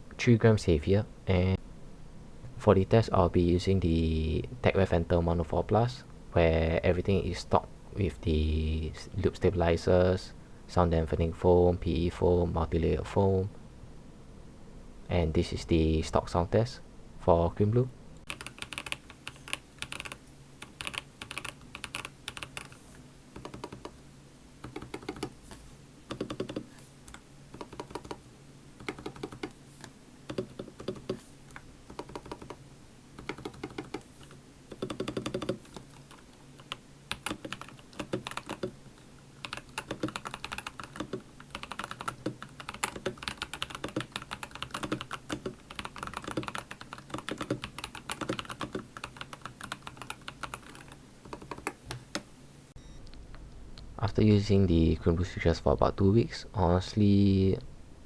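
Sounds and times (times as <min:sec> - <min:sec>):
mechanical keyboard typing: 0:18.3 - 0:22.8, 0:23.4 - 0:24.0, 0:24.6 - 0:25.4, 0:26.1 - 0:28.2, 0:28.8 - 0:29.6, 0:30.3 - 0:32.6, 0:33.2 - 0:34.1, 0:34.7 - 0:38.7, 0:39.4 - 0:52.2.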